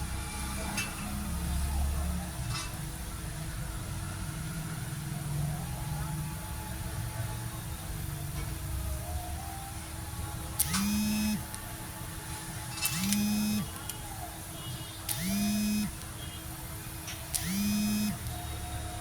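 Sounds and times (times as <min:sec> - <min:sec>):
small electric motor whirring: 0:10.6 - 0:11.6, 0:12.8 - 0:14.0, 0:15.1 - 0:16.1, 0:17.3 - 0:19.0.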